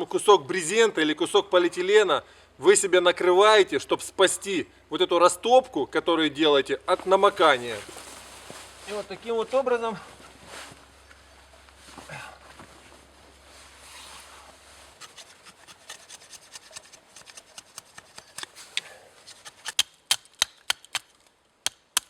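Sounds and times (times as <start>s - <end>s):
knife shaving dry wood: 14.9s - 21.0s.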